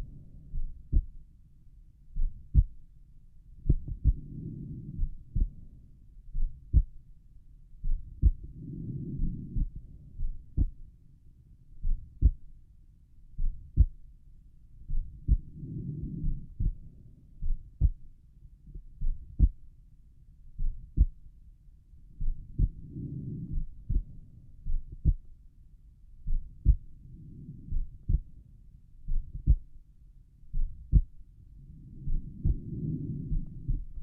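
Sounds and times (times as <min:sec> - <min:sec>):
heartbeat thumps: 0:00.0 - 0:01.3, 0:02.2 - 0:02.8, 0:03.6 - 0:04.3, 0:04.9 - 0:05.7, 0:06.4 - 0:07.0, 0:07.8 - 0:08.6, 0:09.2 - 0:10.9, 0:11.8 - 0:12.5, 0:13.4 - 0:14.0, 0:14.9 - 0:18.0, 0:19.0 - 0:19.6, 0:20.6 - 0:21.2, 0:22.2 - 0:22.9, 0:23.5 - 0:25.3, 0:26.3 - 0:26.9, 0:27.7 - 0:28.3, 0:29.1 - 0:29.8, 0:30.5 - 0:31.2, 0:32.0 - 0:34.0
soft low rushing noise: 0:00.0 - 0:34.0.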